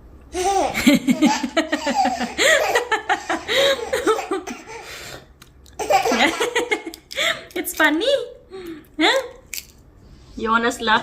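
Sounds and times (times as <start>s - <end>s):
baby laughing: 0.3s - 5.0s, 5.7s - 7.4s.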